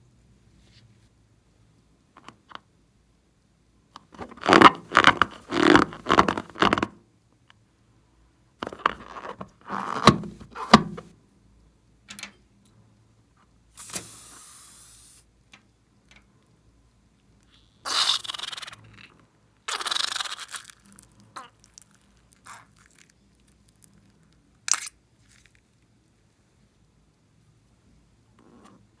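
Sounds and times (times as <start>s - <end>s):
rubbing and squishing balloons: 4.2s - 6.9s, 8.6s - 11.1s
short hiss: 13.8s - 15.3s.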